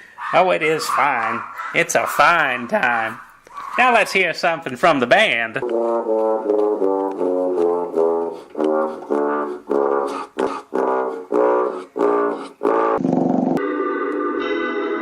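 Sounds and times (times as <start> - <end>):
brass band short notes: 5.6 - 13.0.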